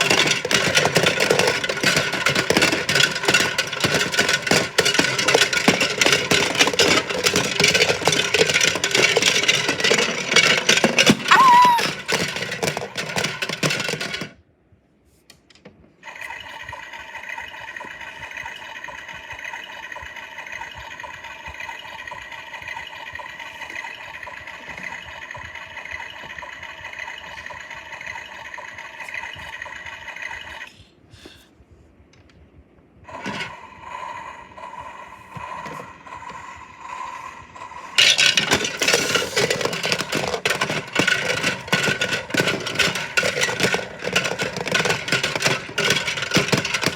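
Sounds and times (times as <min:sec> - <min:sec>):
toy motor whine: 0:00.0 - 0:12.9, 0:16.0 - 0:30.8
drum rattling and scraping: 0:00.0 - 0:14.4, 0:33.1 - 0:46.9.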